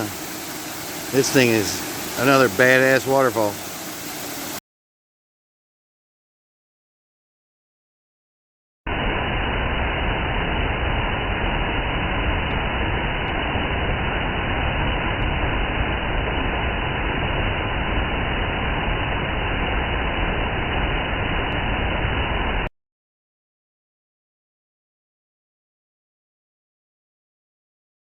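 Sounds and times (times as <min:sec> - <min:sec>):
waterfall roaring: 0:00.0 - 0:04.6.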